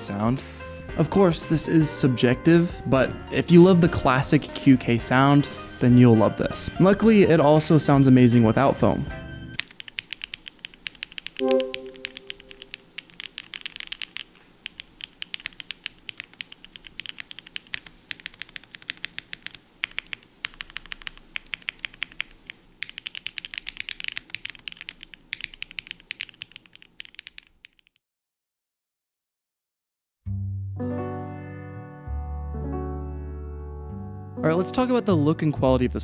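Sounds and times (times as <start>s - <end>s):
keyboard typing clicks: 9.6s - 28.0s.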